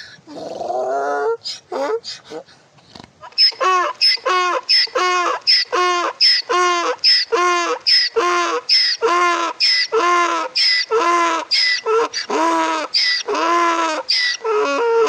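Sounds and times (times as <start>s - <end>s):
donkey braying: 3.2s - 15.0s.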